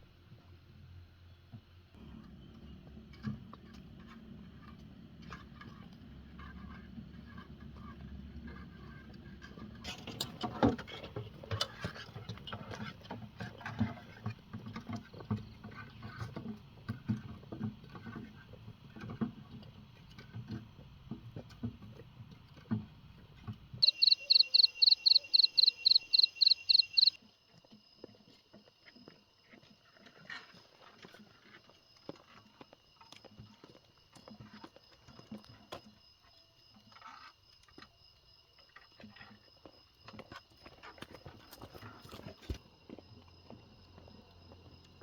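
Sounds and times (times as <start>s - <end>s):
irregular knocks and clatter: 2.6s - 24.7s
rapid high-pitched beeps: 23.8s - 27.2s.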